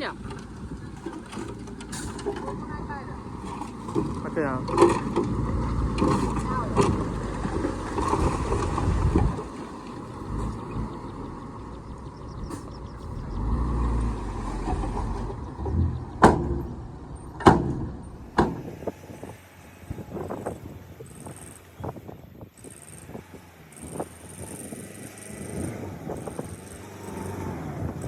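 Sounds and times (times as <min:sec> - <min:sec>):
heavy machine engine rumbling: 0:00.0 - 0:28.0
sharp loud knocks: 0:14.8 - 0:18.9.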